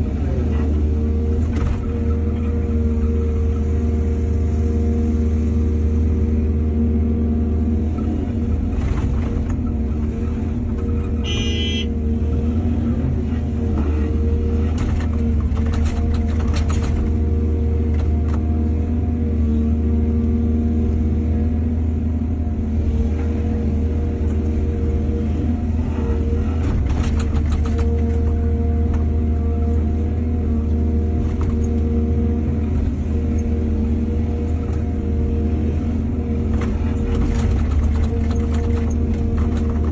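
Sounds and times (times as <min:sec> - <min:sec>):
excavator diesel engine running: 0:00.0 - 0:39.9
excavator clattering: 0:14.6 - 0:17.3, 0:26.5 - 0:29.0, 0:36.4 - 0:39.9.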